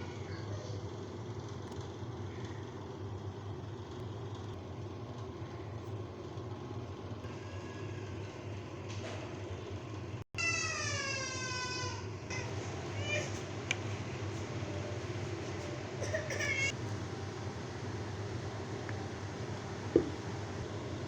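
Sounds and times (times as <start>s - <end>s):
low mechanical hum: 0.0s - 21.0s.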